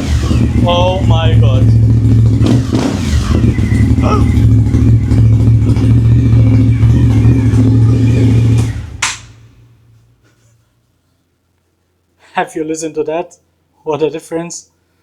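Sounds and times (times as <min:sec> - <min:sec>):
motorcycle engine idling: 0:00.0 - 0:10.0.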